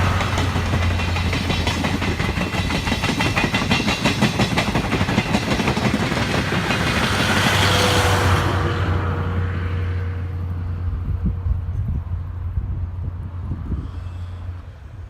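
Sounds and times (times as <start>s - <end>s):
wheels clicking over rail joints: 0.0s - 7.8s
diesel train passing: 0.0s - 15.0s.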